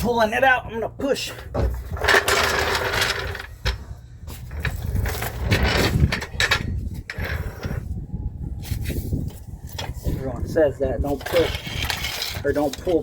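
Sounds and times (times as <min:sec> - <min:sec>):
metal knocks and scrapes: 0:01.4 - 0:07.9, 0:11.1 - 0:13.0.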